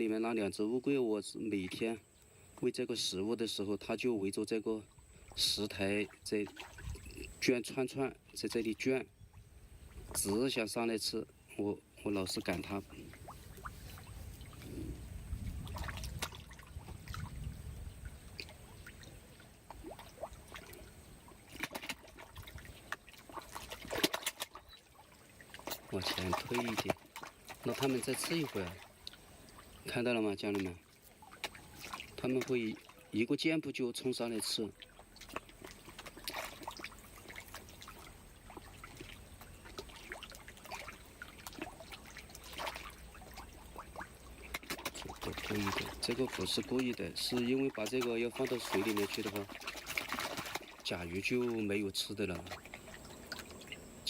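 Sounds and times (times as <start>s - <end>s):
water trickling and splashing: 4.8s - 54.0s
clicks at water surface: 21.5s - 24.8s, 31.3s - 33.0s, 44.0s - 53.8s.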